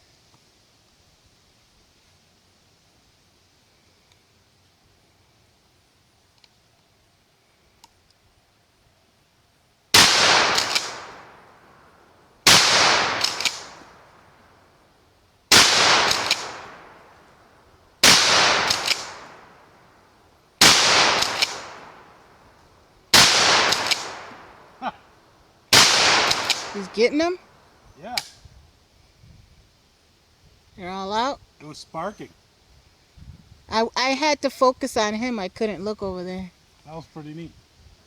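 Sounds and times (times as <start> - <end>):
shotgun shots: 10.0 - 11.4, 12.4 - 14.0, 15.5 - 17.0, 18.0 - 19.6, 20.6 - 22.2, 23.1 - 24.6, 25.7 - 27.4.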